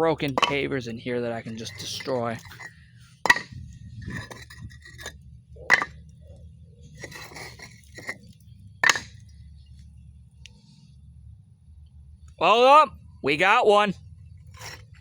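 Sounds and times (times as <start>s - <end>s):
pavers scraping: 1.5s - 6.0s, 6.9s - 9.2s, 14.6s - 15.0s.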